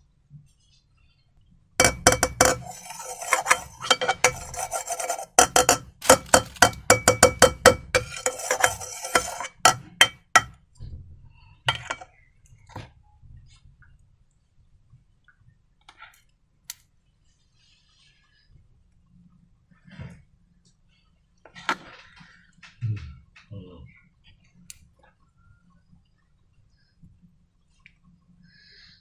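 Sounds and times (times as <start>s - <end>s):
utensil scraping a bowl: 1.8s - 10.5s, 11.7s - 12.1s.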